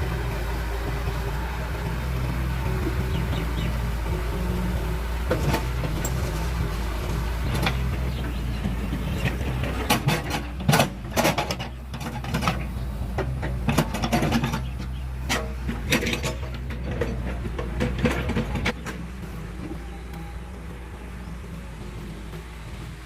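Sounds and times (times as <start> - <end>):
heavy machine engine running: 0.0 - 23.0
sharp knocks and clanks: 7.4 - 19.8.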